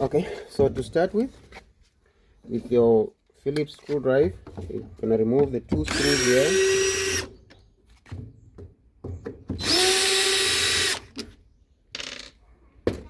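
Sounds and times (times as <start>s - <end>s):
light clicks and handling knocks: 2.4s - 6.0s
power screwdriver whine: 9.6s - 11.1s.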